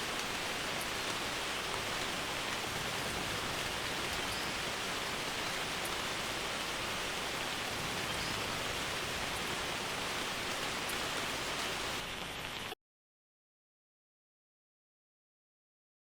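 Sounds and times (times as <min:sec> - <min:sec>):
rain on a roof: 0:00.0 - 0:12.8.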